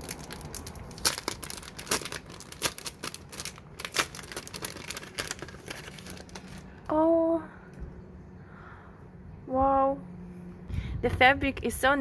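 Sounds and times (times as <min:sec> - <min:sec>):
packaging wrapping crinkling: 0:00.0 - 0:06.8.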